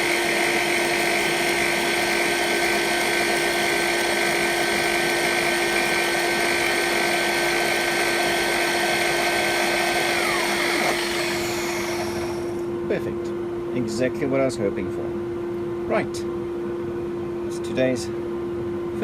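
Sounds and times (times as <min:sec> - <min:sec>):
spindle motor high whine: 0:00.0 - 0:12.8.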